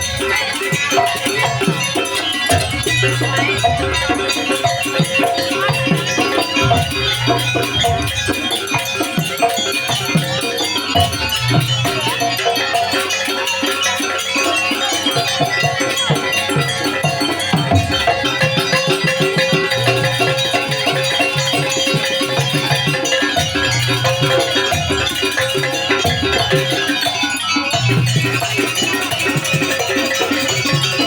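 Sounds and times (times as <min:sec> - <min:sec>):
gamelan music: 0:00.0 - 0:31.0.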